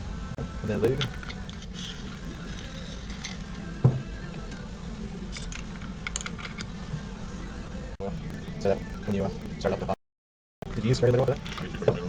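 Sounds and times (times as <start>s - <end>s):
knock: 3.9s - 4.1s.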